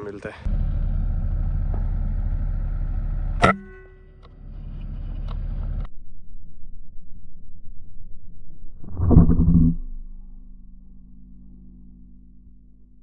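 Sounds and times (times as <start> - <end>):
faint ringing: 3.4 - 5.0
wind rumbling on microphone: 6.6 - 10.9.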